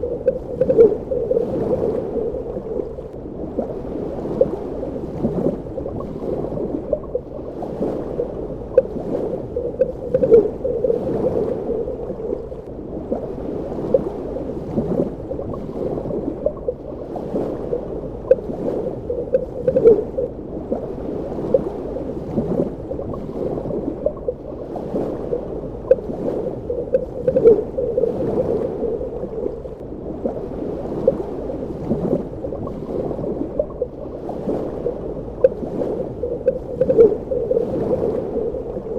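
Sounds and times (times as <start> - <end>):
muffled rush of water: 0.0 - 38.9.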